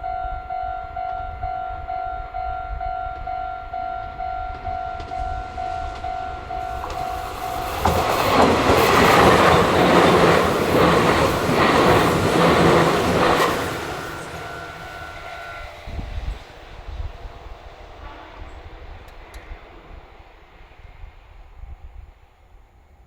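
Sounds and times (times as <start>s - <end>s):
level crossing warning tone: 0.0s - 16.7s
train wheels clacking on rails: 0.0s - 21.6s.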